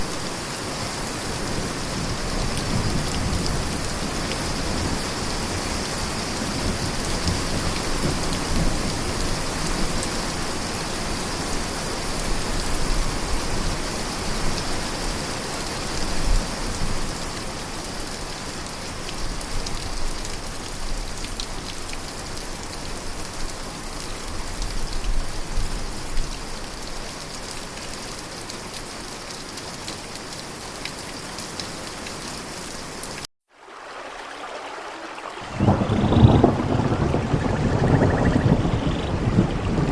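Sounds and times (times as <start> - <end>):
steady rain falling: 0.0 - 39.9
low rumble of thunder: 35.5 - 39.9.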